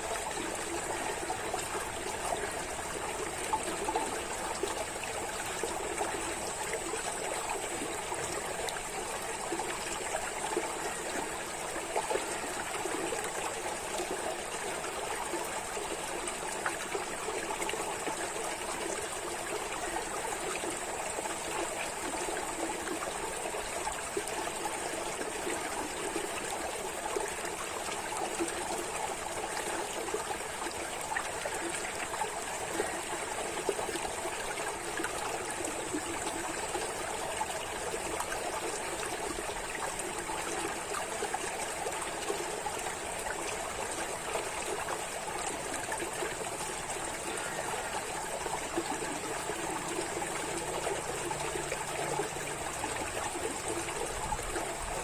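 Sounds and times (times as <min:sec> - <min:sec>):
running water trickling: 0:00.0 - 0:55.0.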